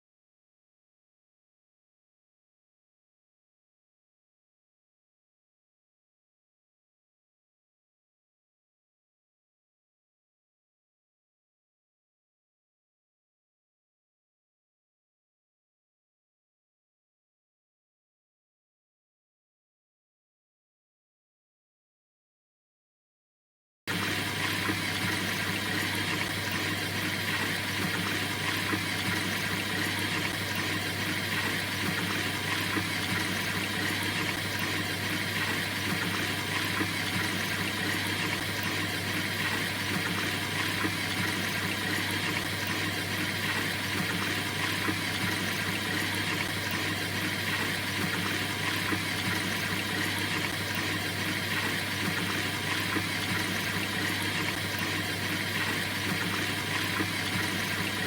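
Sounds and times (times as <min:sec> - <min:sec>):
washing machine water rushing: 0:23.9 - 0:58.0.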